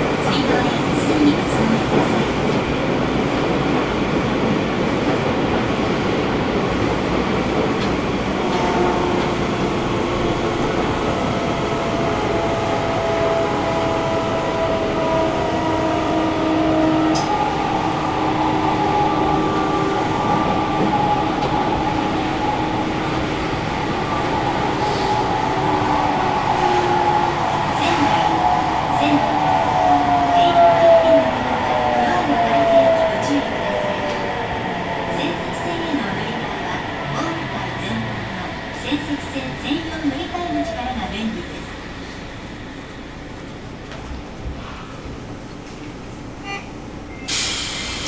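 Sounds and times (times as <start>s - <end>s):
train wheel and rail rumble: 0.0s - 48.0s.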